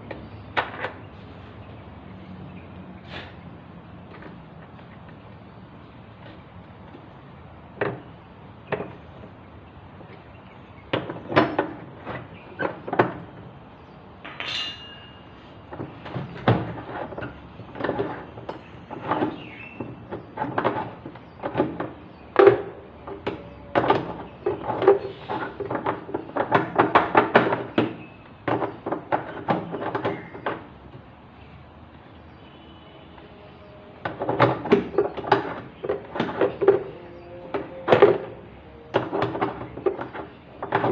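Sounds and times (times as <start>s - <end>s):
metal parts and tools clanking: 14.2s - 19.4s, 34.0s - 40.9s.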